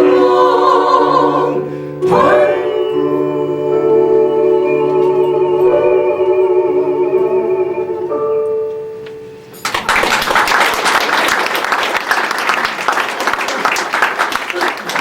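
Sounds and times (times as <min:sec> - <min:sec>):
audience applause: 0:09.6 - 0:15.0.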